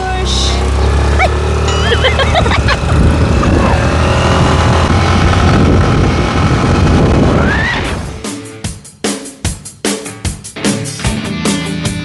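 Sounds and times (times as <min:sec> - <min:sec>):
motorcycle running: 0:00.0 - 0:08.3
wind on microphone: 0:02.6 - 0:08.2
drum-heavy music: 0:08.1 - 0:12.0.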